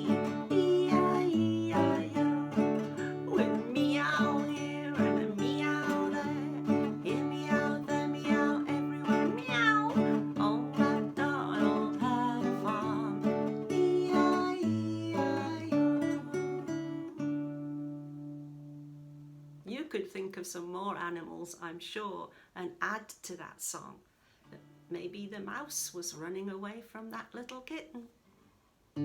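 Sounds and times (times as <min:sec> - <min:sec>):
acoustic guitar strumming chords: 0:00.0 - 0:19.6
person making meow-like calls: 0:09.2 - 0:10.2.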